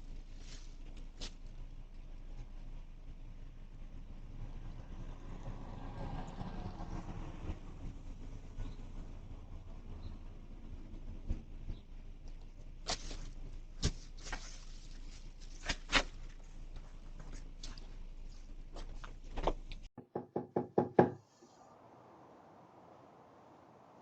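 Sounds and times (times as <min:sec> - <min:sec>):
knocking on a door: 0:20.0 - 0:21.2.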